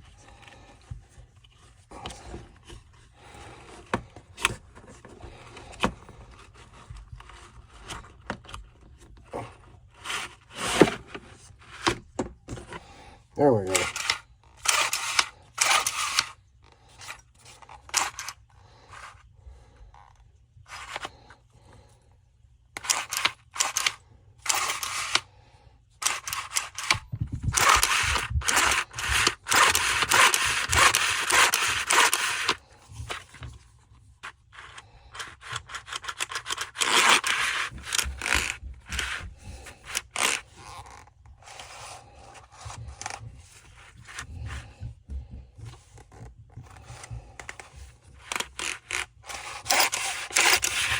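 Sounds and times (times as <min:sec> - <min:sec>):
metal parts scraping and clicking: 0:13.7 - 0:16.4, 0:22.8 - 0:25.2, 0:26.0 - 0:33.2, 0:34.6 - 0:39.2, 0:39.9 - 0:42.0, 0:47.5 - 0:50.9.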